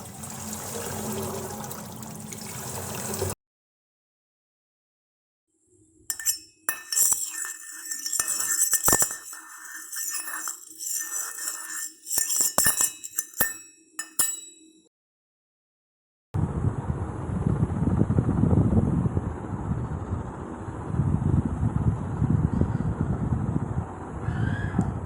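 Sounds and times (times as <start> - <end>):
glass and dishes clinking: 6.1 - 14.8.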